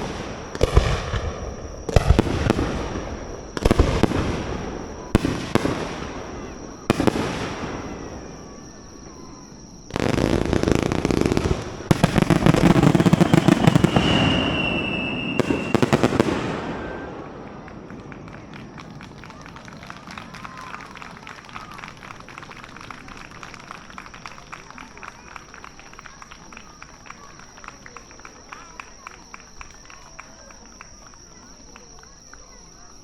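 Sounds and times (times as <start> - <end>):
rapid crackling firework bursts: 0.0 - 8.6, 9.6 - 23.4
firework bangs: 0.0 - 26.9.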